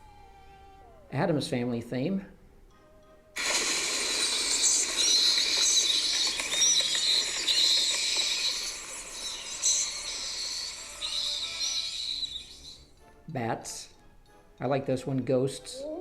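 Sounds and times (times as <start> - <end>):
steady hiss: 3.4 - 12.9
high squeaks and chirps: 3.4 - 13.0.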